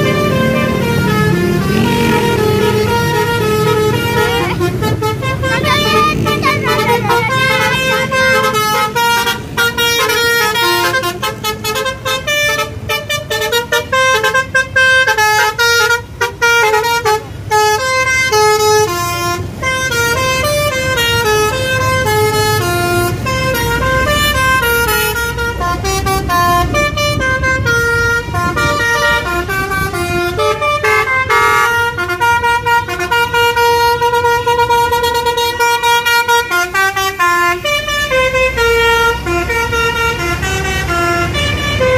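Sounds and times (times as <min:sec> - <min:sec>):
low vehicle rumble: 0:00.0 - 0:41.9
musical bus horn playing tune: 0:00.0 - 0:41.9.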